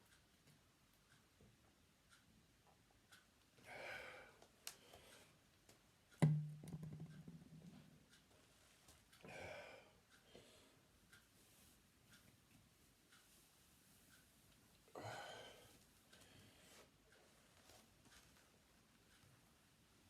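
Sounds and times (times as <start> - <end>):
heavy breath out: 3.6 - 5.3, 9.2 - 10.7, 14.9 - 16.7.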